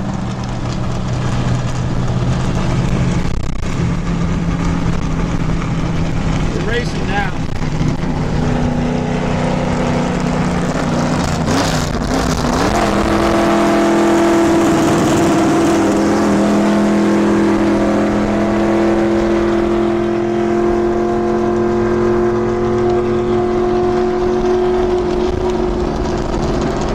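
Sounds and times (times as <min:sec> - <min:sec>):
race car engine at speed: 0:00.0 - 0:26.9.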